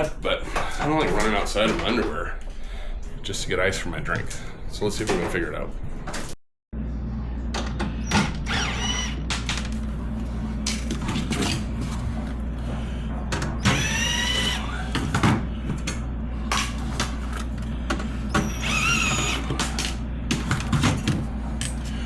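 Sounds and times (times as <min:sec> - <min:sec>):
steady low hum: 0:00.0 - 0:22.0
cordless driver motor whine: 0:08.0 - 0:09.6, 0:13.4 - 0:15.2, 0:18.3 - 0:20.0.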